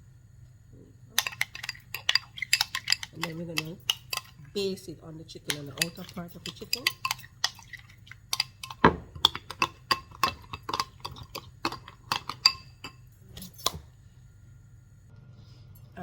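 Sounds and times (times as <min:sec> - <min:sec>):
low steady hum: 0:00.0 - 0:16.0
metal spoon clinking against bowl: 0:01.2 - 0:04.7, 0:05.4 - 0:13.8.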